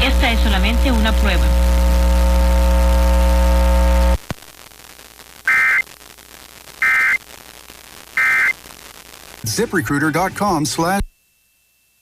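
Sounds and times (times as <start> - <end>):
loud buzzy steady tone: 0.0 - 12.0
screechy digital data tones: 5.5 - 5.8, 6.8 - 7.2, 8.2 - 8.6.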